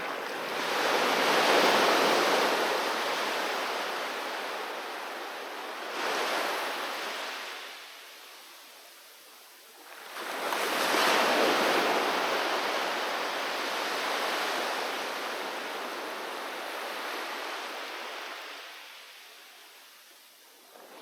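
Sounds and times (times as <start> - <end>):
wave breaking on shore: 0.0 - 7.8.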